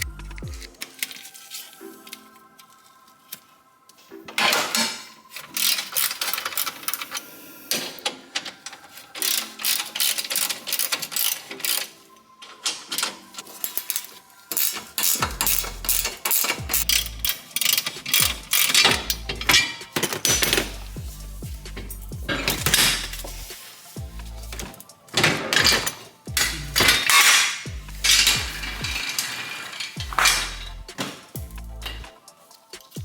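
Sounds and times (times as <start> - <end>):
background music: 0.0 - 33.0
metallic tool clanks: 12.5 - 23.6, 24.4 - 33.0
ratchet wrench clicking: 13.9 - 23.6.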